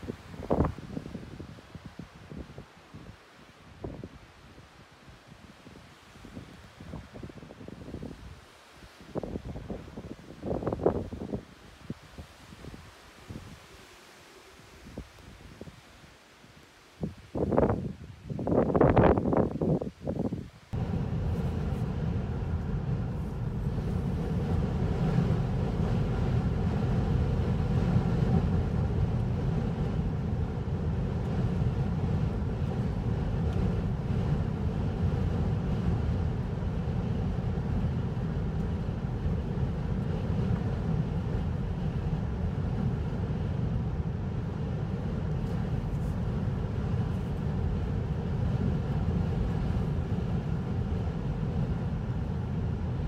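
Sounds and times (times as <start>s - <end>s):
vehicle engine running: 20.8s - 43.4s
road noise: 20.8s - 53.0s.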